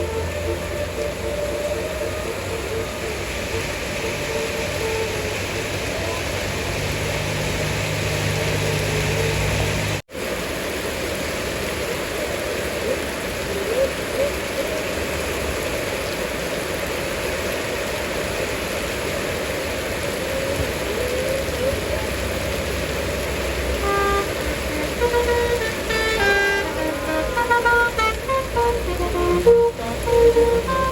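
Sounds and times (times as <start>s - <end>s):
bus multi-tone horn tune: 0.0s - 10.0s, 23.6s - 30.9s
road traffic noise: 0.0s - 30.9s.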